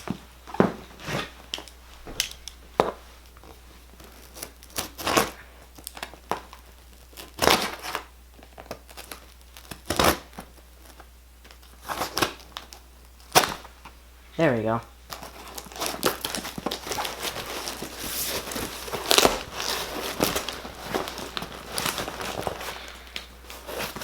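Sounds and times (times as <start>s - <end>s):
packaging crinkling and tearing: 1.0s - 13.7s, 15.0s - 24.0s.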